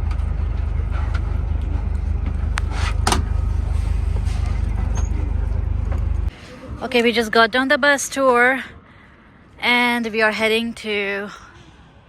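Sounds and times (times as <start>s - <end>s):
bus engine low rumble: 0.0s - 7.0s.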